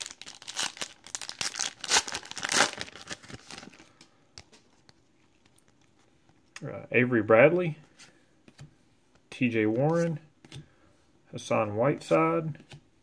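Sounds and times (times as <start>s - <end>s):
wrapper crinkling and tearing: 0.0s - 4.0s.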